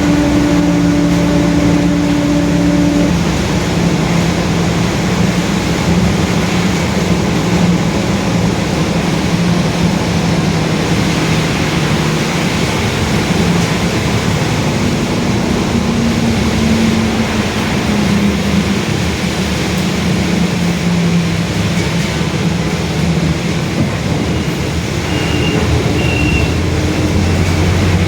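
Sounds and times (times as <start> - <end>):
bus differential droning: 0.0 - 28.0
road and engine noise: 0.0 - 28.0.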